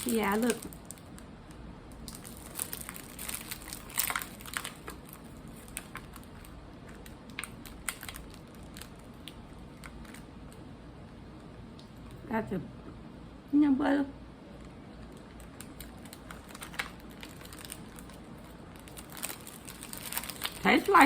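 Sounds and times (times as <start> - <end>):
snack wrapper crinkling: 0.0 - 1.3, 1.9 - 10.6, 15.0 - 21.0.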